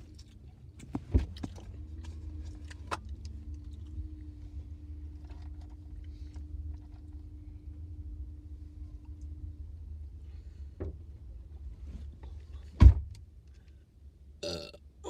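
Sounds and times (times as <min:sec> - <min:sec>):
engine and road rumble: 0:00.0 - 0:15.0
thump: 0:12.8 - 0:13.2.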